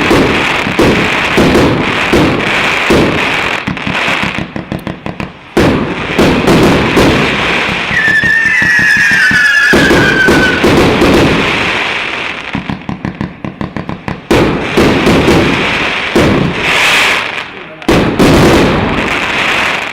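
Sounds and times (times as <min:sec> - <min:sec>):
fireworks launches and bursts: 0:00.0 - 0:19.9
falling whistling tone: 0:07.9 - 0:10.6.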